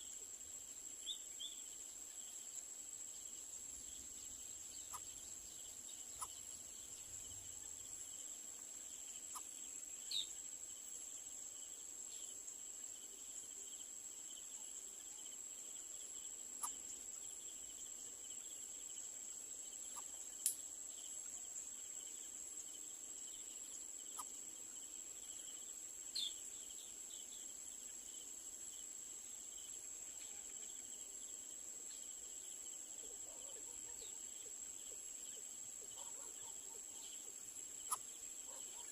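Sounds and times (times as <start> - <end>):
pulsing insect trill: 0.0 - 38.9
short sharp insect chirps: 1.0 - 8.2, 8.8 - 11.2, 23.2 - 28.8, 34.8 - 38.9.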